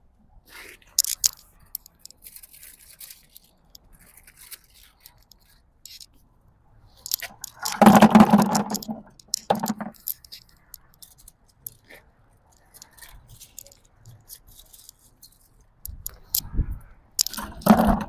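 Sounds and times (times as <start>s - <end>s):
nuts clattering into a container: 7.1s - 10.2s, 17.2s - 18.0s.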